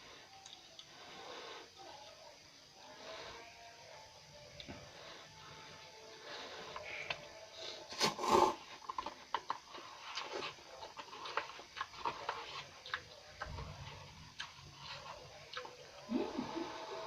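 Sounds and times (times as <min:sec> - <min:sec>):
slurping and chewing noodles: 0:06.2 - 0:17.0.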